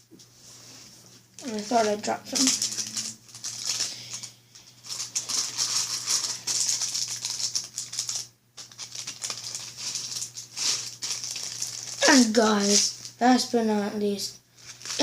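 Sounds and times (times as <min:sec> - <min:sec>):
fidget spinners rattling: 0:01.4 - 0:13.2.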